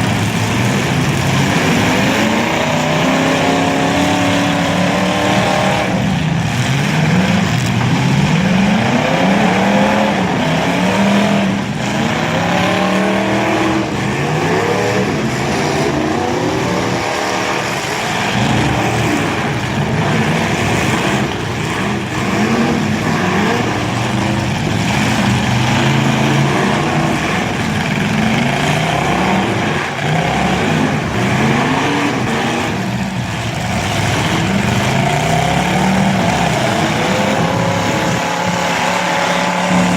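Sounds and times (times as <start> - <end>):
car engines revving: 0.0 - 39.9.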